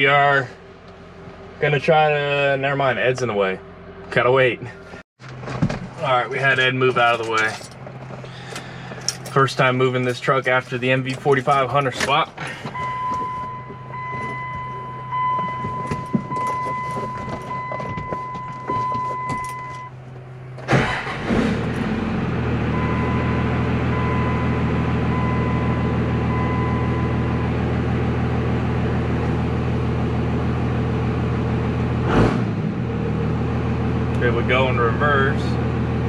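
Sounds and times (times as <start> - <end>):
diesel engine starting and idling: 0.0 - 36.0
dashboard chime beeping: 12.8 - 19.9.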